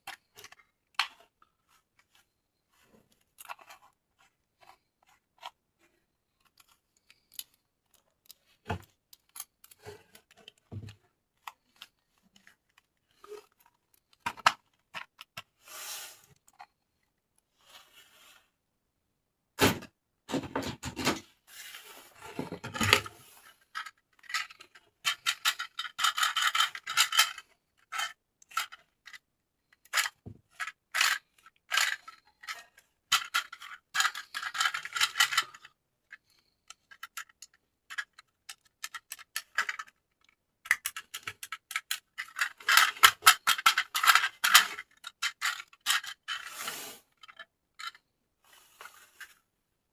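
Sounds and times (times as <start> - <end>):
packaging rubbing and scraping: 41.2 - 47.4.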